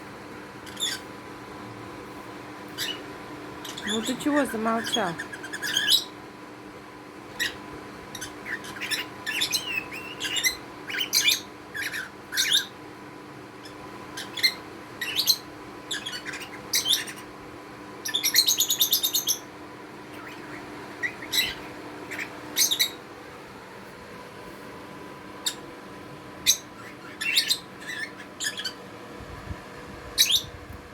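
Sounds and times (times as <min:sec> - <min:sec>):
fast rattling bird trill: 0:03.6 - 0:06.1, 0:20.1 - 0:23.0, 0:26.4 - 0:28.8
budgerigar chirping: 0:08.2 - 0:12.7, 0:13.6 - 0:17.2, 0:18.0 - 0:19.5, 0:20.1 - 0:23.0, 0:26.4 - 0:28.8, 0:30.2 - 0:30.5.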